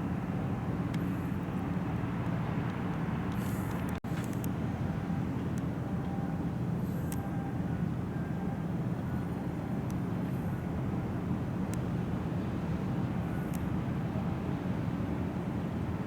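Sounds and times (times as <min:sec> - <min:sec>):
ferry engines rumbling: 0:00.0 - 0:16.0.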